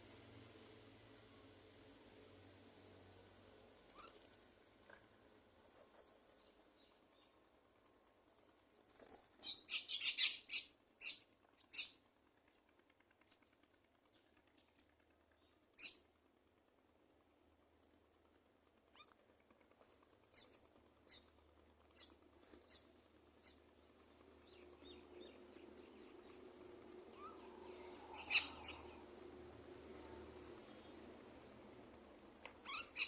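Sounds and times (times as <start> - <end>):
faint steady hum: 0.0 - 33.0
high-pitched animal calls: 27.1 - 29.0, 32.6 - 33.0.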